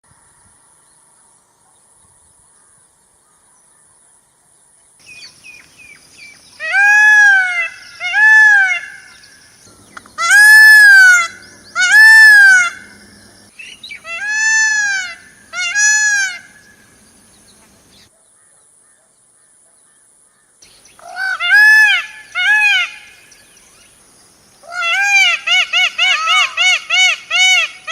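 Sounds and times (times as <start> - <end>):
faint bird chirping: 0.1 - 15.6, 16.2 - 21.4.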